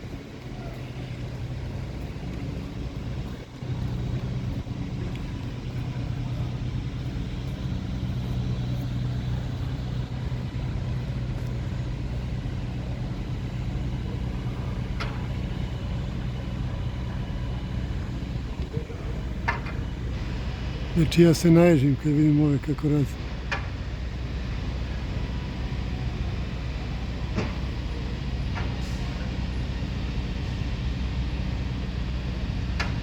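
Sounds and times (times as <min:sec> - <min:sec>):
large engine humming: 0:00.0 - 0:33.0.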